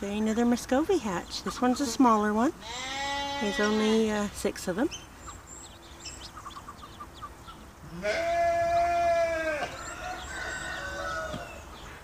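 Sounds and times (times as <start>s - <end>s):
ducklings peeping: 0.1s - 2.5s, 3.4s - 12.0s
sheep bleating: 2.6s - 4.0s, 7.9s - 9.7s.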